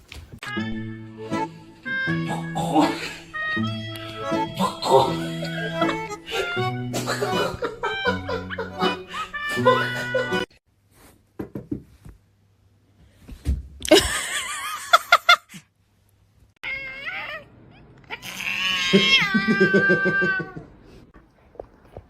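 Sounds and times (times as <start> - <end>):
cat yowling: 16.6 - 20.7.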